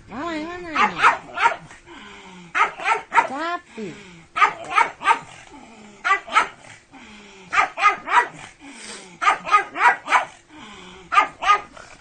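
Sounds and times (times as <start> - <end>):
dog barking: 0.7 - 1.7, 2.6 - 3.4, 4.4 - 5.3, 6.0 - 6.6, 7.5 - 8.4, 9.2 - 10.4, 11.1 - 11.7.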